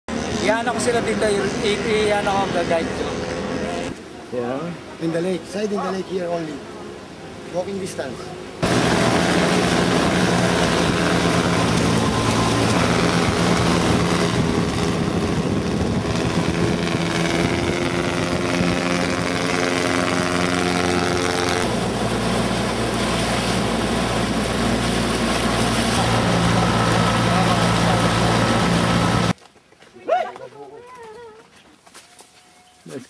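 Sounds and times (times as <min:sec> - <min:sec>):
engine running: 0:00.1 - 0:04.0, 0:08.4 - 0:29.4.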